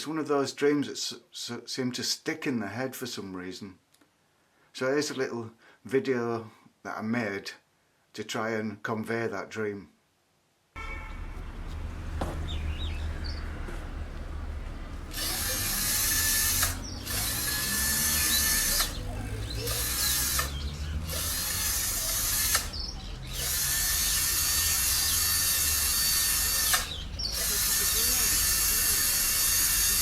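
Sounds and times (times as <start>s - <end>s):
power drill whining: 15.0s - 30.0s.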